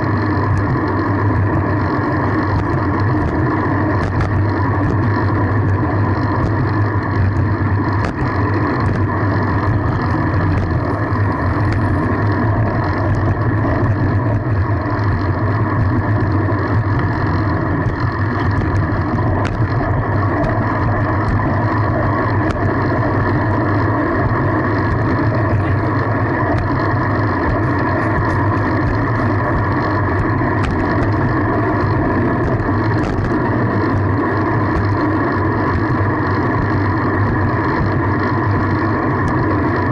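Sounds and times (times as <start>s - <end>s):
bicycle riding noise: 0.0s - 39.9s.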